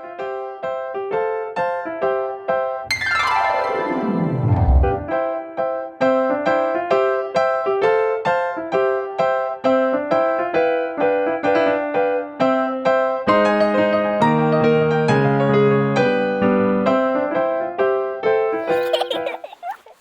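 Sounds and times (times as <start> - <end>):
bass line: 2.9 - 5.2
keyboard playing bouncy chords: 2.9 - 5.2.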